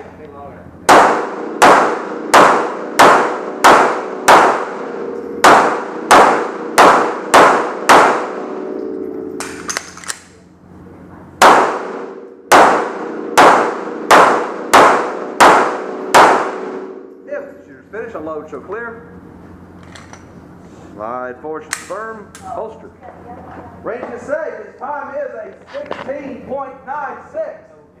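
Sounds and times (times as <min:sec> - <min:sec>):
pistol shots: 0:00.9 - 0:08.5, 0:11.4 - 0:17.0.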